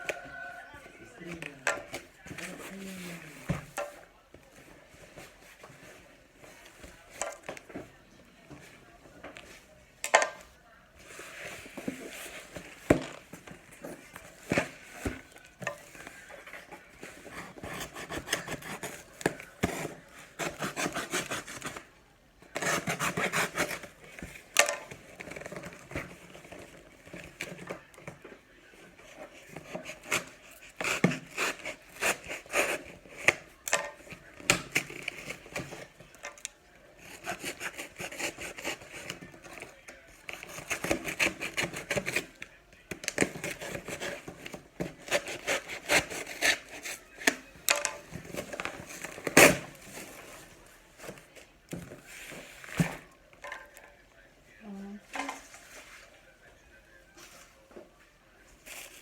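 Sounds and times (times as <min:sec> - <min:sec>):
objects scraping and rustling: 0:00.0 - 0:54.3, 0:55.0 - 0:59.0.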